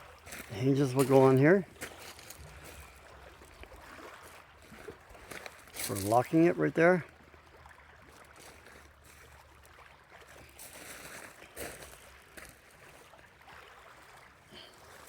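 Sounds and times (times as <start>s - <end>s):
water lapping against a dock: 0.0s - 15.0s.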